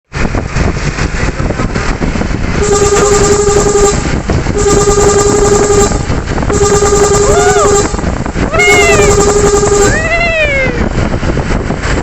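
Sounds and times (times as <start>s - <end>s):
rumbling engine and road noise: 0.0s - 12.0s
truck horn blasts: 2.6s - 10.0s.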